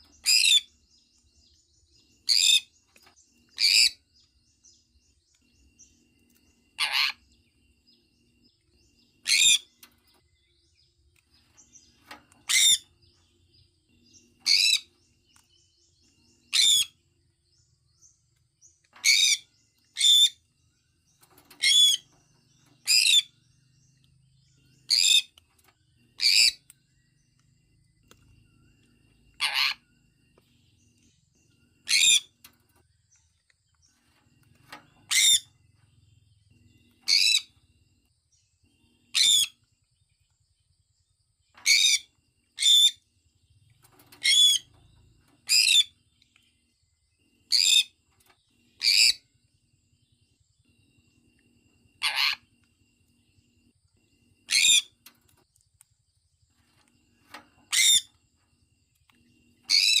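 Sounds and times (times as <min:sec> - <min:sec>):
parrot shrill calls: 0:06.8 - 0:07.2, 0:29.4 - 0:29.8, 0:52.0 - 0:52.4, 0:54.5 - 0:54.9.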